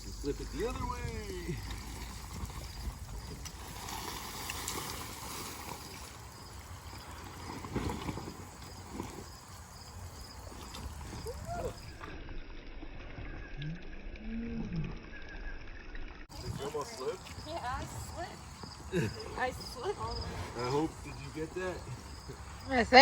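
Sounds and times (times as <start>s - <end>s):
water trickling and splashing: 0.0s - 23.0s.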